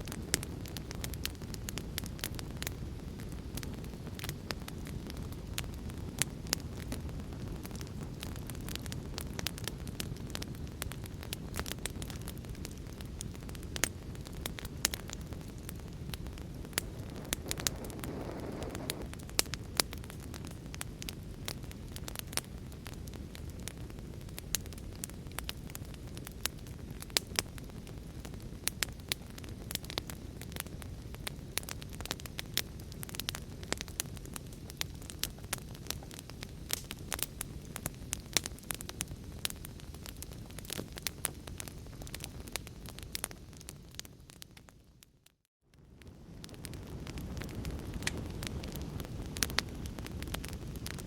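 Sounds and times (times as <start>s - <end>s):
fire crackling and popping: 0.0s - 51.0s
fire hissing: 0.1s - 44.1s.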